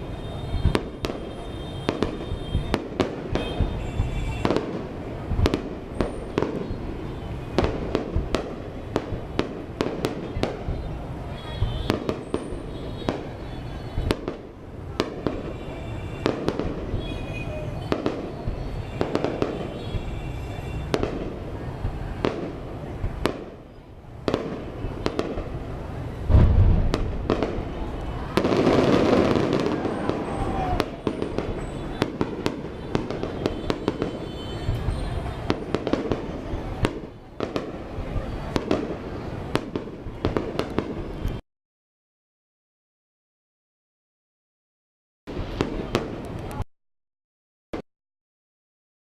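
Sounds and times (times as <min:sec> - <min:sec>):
firework crackling burst: 0:00.0 - 0:41.4
fireworks bangs and pops: 0:00.0 - 0:41.4, 0:45.3 - 0:46.6
heavy firework boom: 0:26.2 - 0:33.8.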